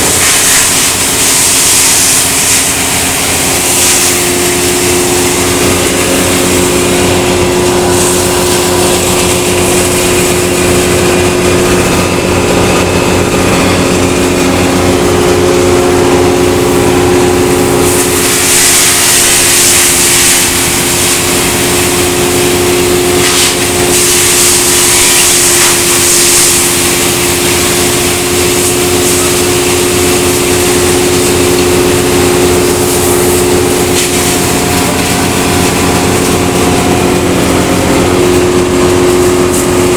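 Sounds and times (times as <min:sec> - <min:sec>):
harsh high hiss of shredding: 0:00.0 - 0:11.3, 0:16.5 - 0:36.3
wood chipper engine running: 0:00.0 - 0:39.9.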